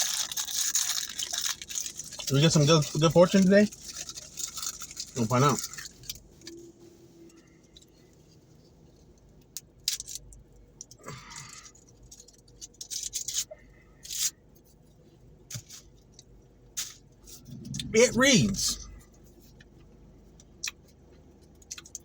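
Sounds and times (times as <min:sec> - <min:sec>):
fortune cookie wrapper crinkling: 0:00.0 - 0:06.3, 0:09.8 - 0:14.4.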